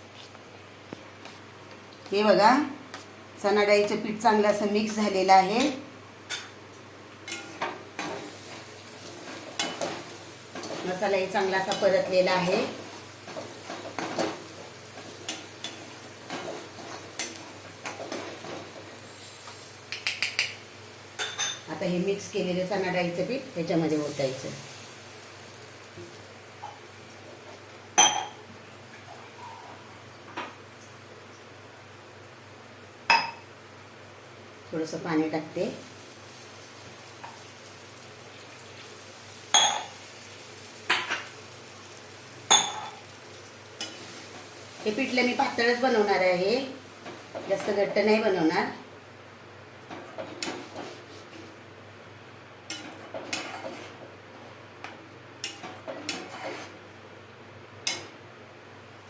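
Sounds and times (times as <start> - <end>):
paste sizzling in oil: 35.6 - 47.6
spatula scraping a pan: 52.7 - 54.0, 55.9 - 56.8.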